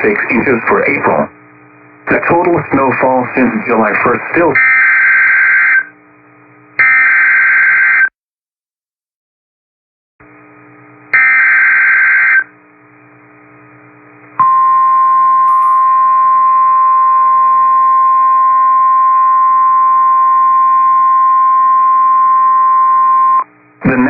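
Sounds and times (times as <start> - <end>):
faint radio hum: 0.0 - 4.6, 23.7 - 24.0.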